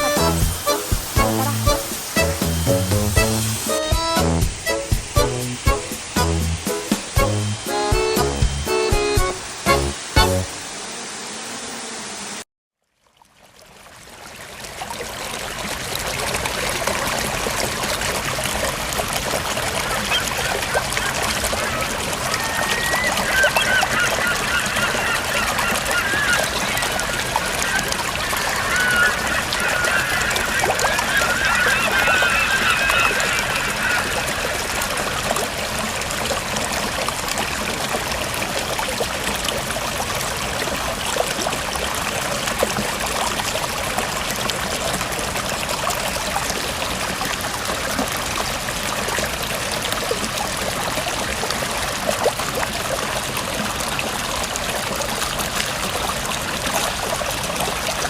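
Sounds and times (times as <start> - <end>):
wavering high-pitched sound: 0.0 - 10.6
waterfall and stream rushing: 0.0 - 12.4, 13.5 - 58.0.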